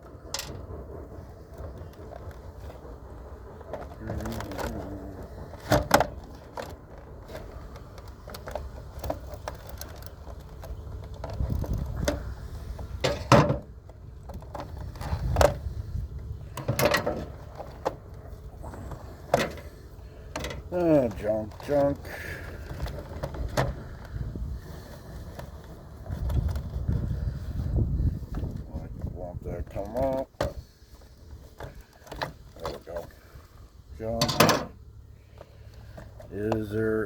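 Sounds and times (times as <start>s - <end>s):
wind on microphone: 11.3s - 13.0s, 23.1s - 30.7s.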